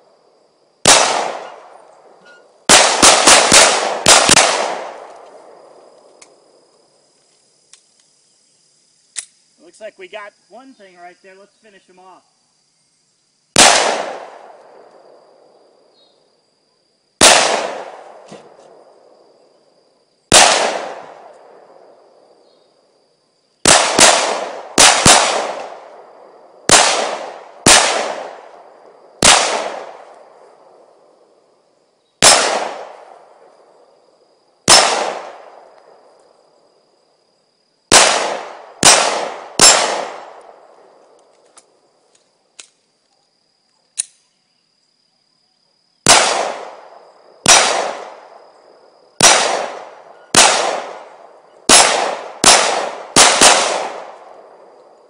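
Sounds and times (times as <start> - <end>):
gunshots with echo: 0.8 - 1.8, 2.7 - 5.2, 13.6 - 14.6, 17.2 - 18.4, 20.3 - 21.2, 23.6 - 26.0, 26.7 - 28.5, 29.2 - 30.1, 32.2 - 33.1, 34.7 - 35.6, 37.9 - 40.4, 46.1 - 48.3, 49.2 - 54.6.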